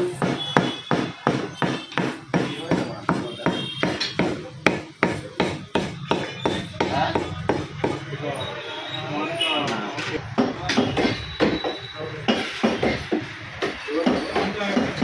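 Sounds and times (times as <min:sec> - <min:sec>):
cleaver chopping meat: 0:00.0 - 0:08.0.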